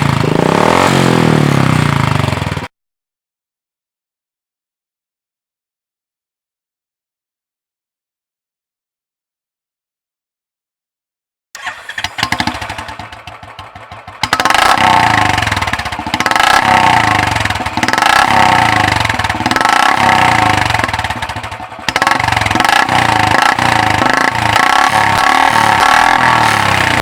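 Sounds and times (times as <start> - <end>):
motorcycle engine revving: 0.0 - 2.7, 11.6 - 27.0.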